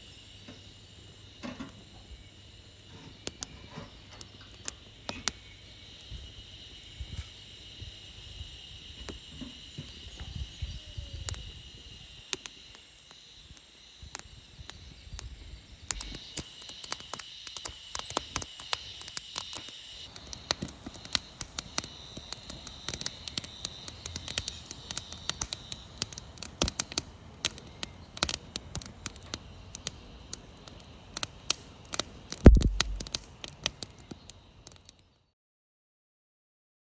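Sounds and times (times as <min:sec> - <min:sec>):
insects chirring: 0:00.0 - 0:35.3
campfire crackling and popping: 0:00.1 - 0:35.2
loud low thump: 0:32.5 - 0:33.0.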